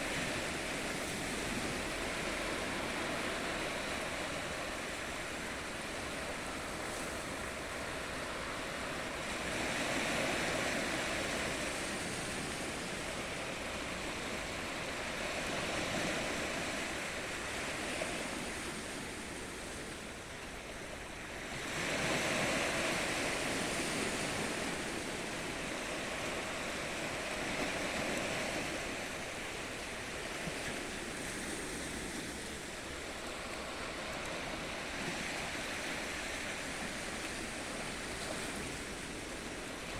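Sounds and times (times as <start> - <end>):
ocean waves breaking on shore: 0.0 - 39.9.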